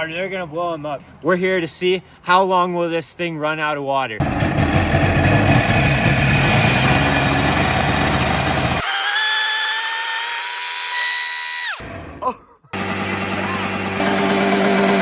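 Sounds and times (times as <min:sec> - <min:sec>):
jet ski engine at high revs: 0:04.2 - 0:08.8, 0:12.8 - 0:15.0.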